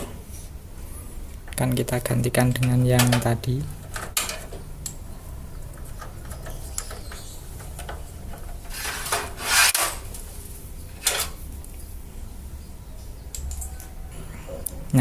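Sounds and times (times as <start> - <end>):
hard objects scraping: 5.8 - 11.5.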